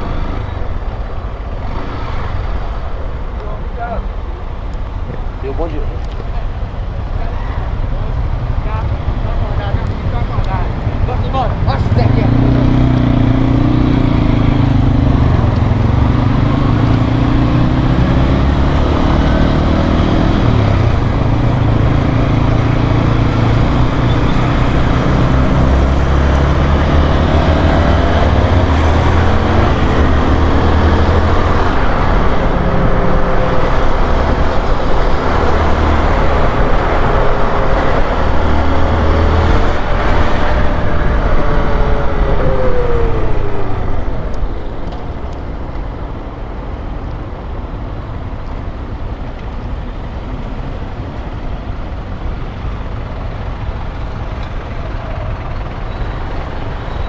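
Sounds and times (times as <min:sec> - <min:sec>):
steady rush of noise: 0:00.0 - 0:55.7
motorcycle engine running: 0:06.3 - 0:46.3.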